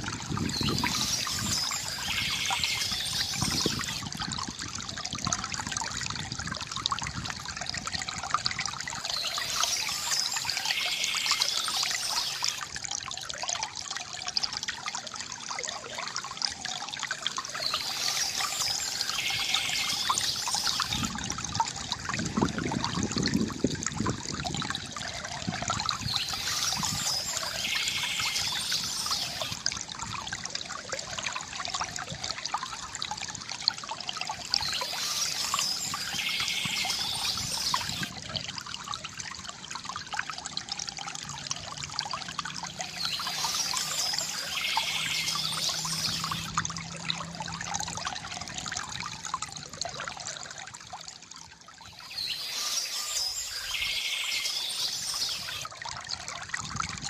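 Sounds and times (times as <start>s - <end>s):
river water trickling: 0.0s - 57.0s
birds chirping: 0.4s - 4.0s, 26.0s - 29.6s, 34.5s - 38.1s, 42.8s - 46.5s, 51.9s - 55.7s.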